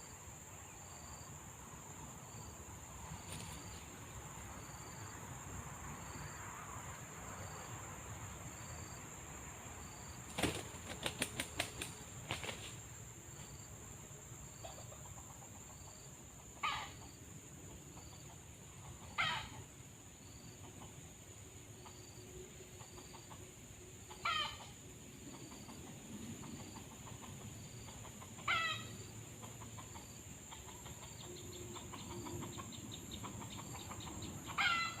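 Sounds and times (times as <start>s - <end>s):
faint insect chirps: 0.0s - 35.0s
high insect whine: 0.0s - 35.0s
quick run of clicks: 10.3s - 12.8s.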